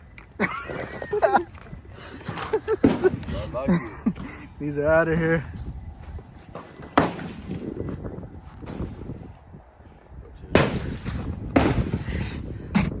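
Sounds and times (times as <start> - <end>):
gunshots with ringing tail: 10.5 - 12.0.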